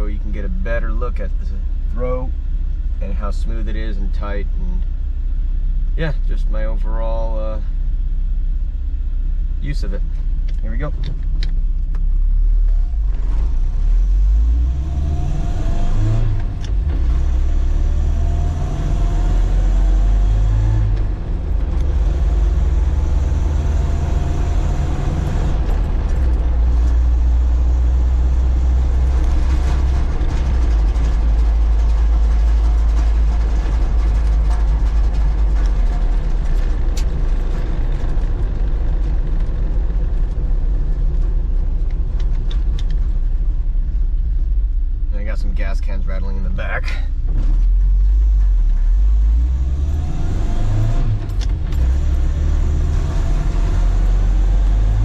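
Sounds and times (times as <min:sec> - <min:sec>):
car engine accelerating through gears: 0:10.5 - 0:43.2, 0:46.9 - 0:55.0.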